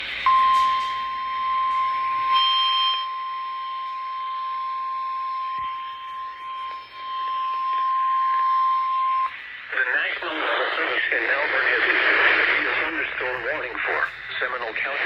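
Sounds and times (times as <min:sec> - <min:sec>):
weather radio alarm tone: 0:00.0 - 0:15.0
radio hiss: 0:05.6 - 0:15.0.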